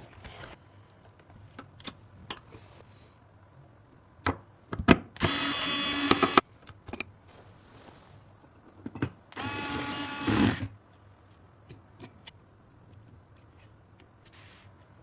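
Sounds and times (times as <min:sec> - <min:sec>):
electric screwdriver whirring: 0:05.2 - 0:06.4, 0:09.4 - 0:10.7.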